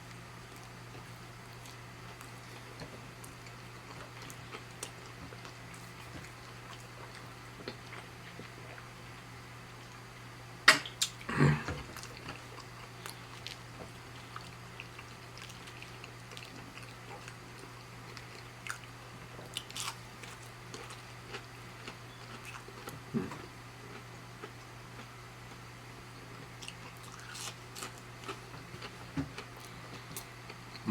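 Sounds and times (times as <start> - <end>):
person biting and chewing: 19.6 - 23.5, 26.6 - 30.9.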